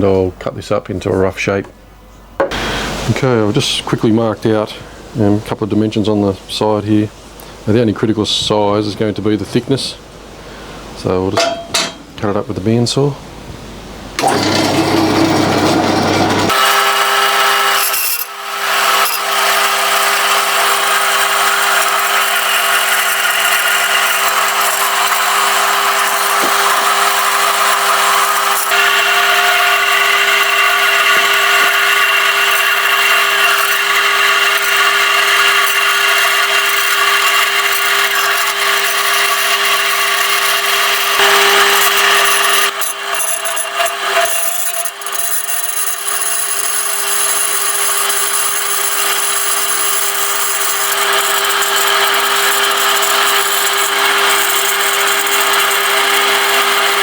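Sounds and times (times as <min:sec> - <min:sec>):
bandsaw motor hum: 0:14.2 - 0:57.0
saw blade cutting metal: 0:14.2 - 0:57.0.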